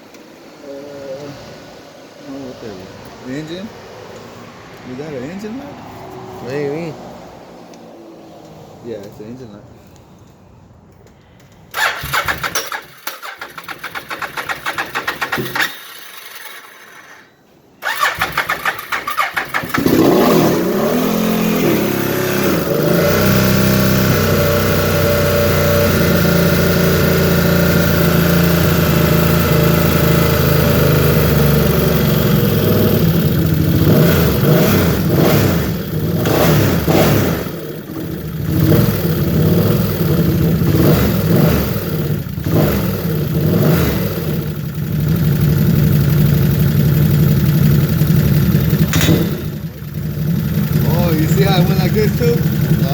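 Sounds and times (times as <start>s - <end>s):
electric starter cranking engine: 11.7s - 52.9s
atv engine running: 11.8s - 17.1s, 17.8s - 52.9s.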